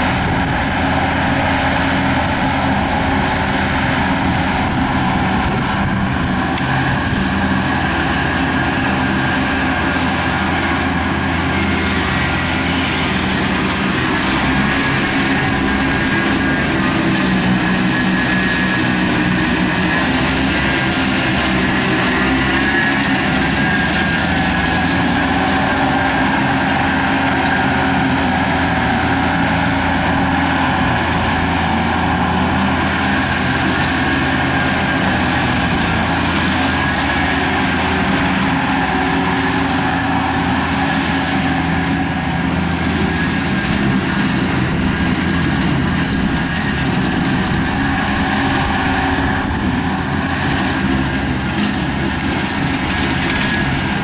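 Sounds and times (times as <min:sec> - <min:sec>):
mower blades spinning: 0:00.0 - 0:54.0
skid steer engine under load: 0:00.0 - 0:54.0.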